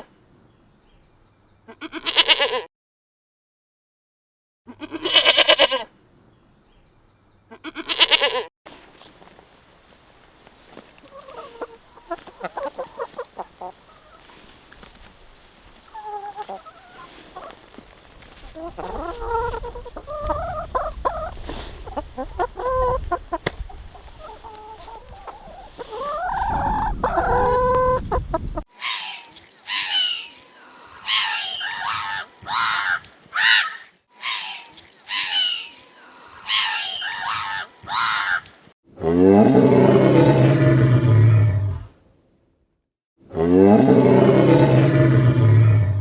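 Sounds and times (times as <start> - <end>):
high-pitched animal call: 1.7 - 2.7, 4.7 - 5.9, 7.5 - 8.5, 28.7 - 41.9
chickens clucking: 11.0 - 14.5, 15.8 - 17.8, 18.5 - 38.1.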